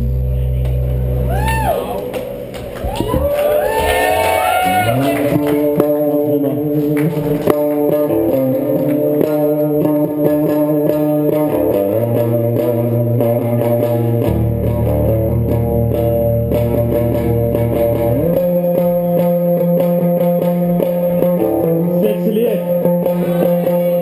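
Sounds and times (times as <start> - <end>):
held bass note: 0.0 - 3.6
bass line: 0.0 - 24.0
electric guitar chords: 0.0 - 24.0
live rock band playing: 0.0 - 24.0.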